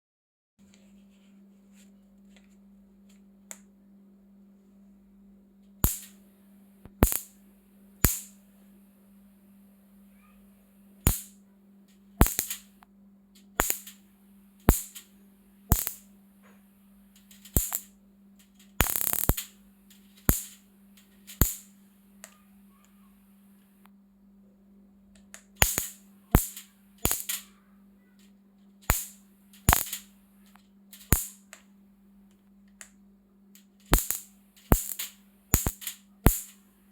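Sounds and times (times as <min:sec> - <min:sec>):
steady low hum: 0:00.7 - 0:36.9
buzzing electric arc: 0:05.8 - 0:06.2, 0:07.0 - 0:07.4, 0:08.0 - 0:08.4, 0:11.0 - 0:11.4, 0:12.2 - 0:12.8, 0:13.6 - 0:14.0, 0:14.7 - 0:15.1, 0:15.7 - 0:16.1, 0:17.2 - 0:18.0, 0:18.8 - 0:21.8, 0:25.6 - 0:27.5, 0:28.9 - 0:30.2, 0:31.0 - 0:31.5, 0:33.8 - 0:36.7
electric spark cracks: 0:05.8 - 0:06.2, 0:06.9 - 0:07.4, 0:08.0 - 0:08.4, 0:11.0 - 0:11.4, 0:12.2 - 0:12.8, 0:13.6 - 0:14.0, 0:14.7 - 0:15.1, 0:15.7 - 0:16.1, 0:17.3 - 0:17.9, 0:18.8 - 0:19.6, 0:20.2 - 0:21.8, 0:25.6 - 0:27.5, 0:28.9 - 0:30.2, 0:31.0 - 0:31.5, 0:33.9 - 0:36.7.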